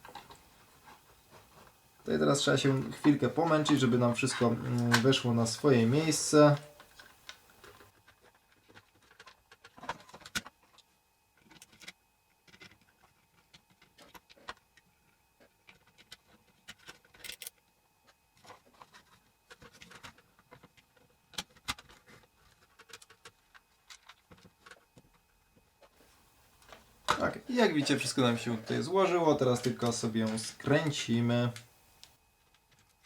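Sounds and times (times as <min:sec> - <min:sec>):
plastic parts clicking and clacking: 0:02.7 - 0:10.8, 0:15.7 - 0:17.6, 0:18.4 - 0:25.1.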